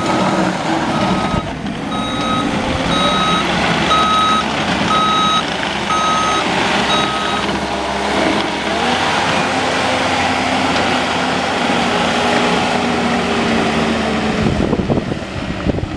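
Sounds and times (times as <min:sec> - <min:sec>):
diesel engine running: 0:00.0 - 0:15.9
backup alarm beeping: 0:00.9 - 0:07.5.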